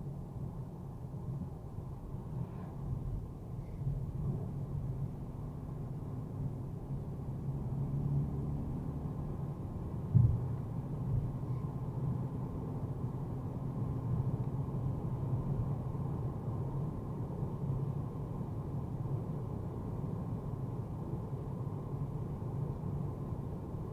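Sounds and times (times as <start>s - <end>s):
short low thump: 10.1s - 10.5s.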